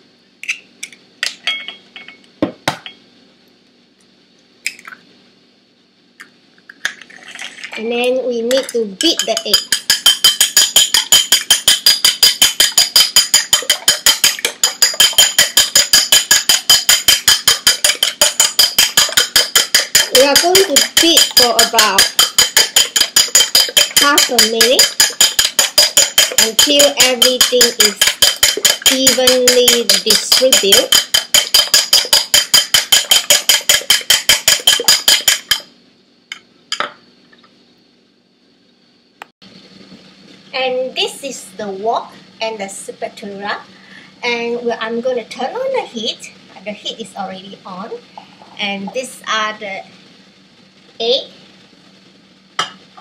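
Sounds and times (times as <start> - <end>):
whisk beating eggs in bowl: 8.5 - 35.6.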